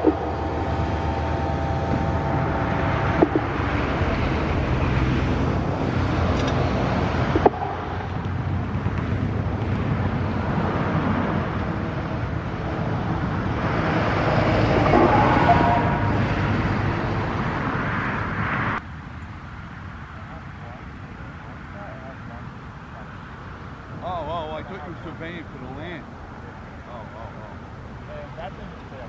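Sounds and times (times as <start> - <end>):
passing road traffic: 0.0 - 29.0.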